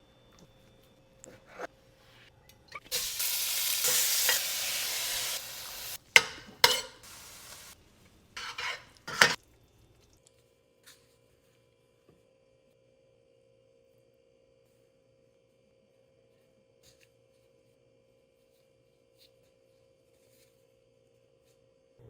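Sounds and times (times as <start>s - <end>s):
food sizzling in a frying pan: 2.9s - 7.8s.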